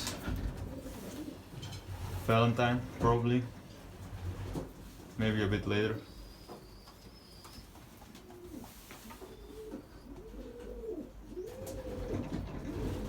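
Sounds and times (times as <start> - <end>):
pigeons cooing: 0.0 - 2.2, 5.7 - 13.0.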